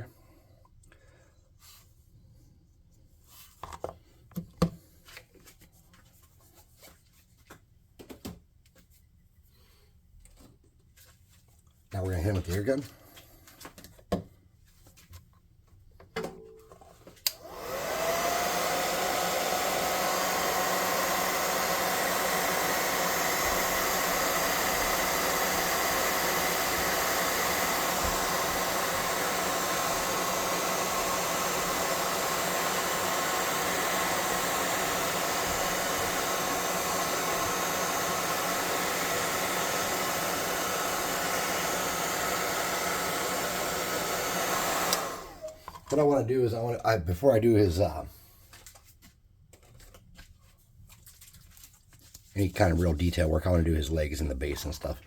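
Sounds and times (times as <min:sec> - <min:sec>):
hot-air blower whining and blowing: 0:17.2 - 0:46.2.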